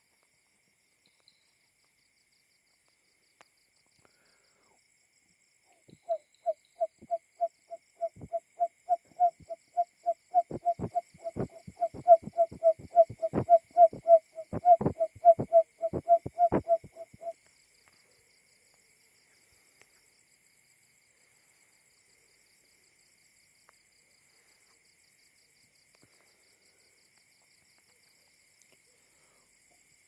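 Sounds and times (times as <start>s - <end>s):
faint insects droning: 0.0s - 30.0s
bird hooting call: 5.9s - 17.4s.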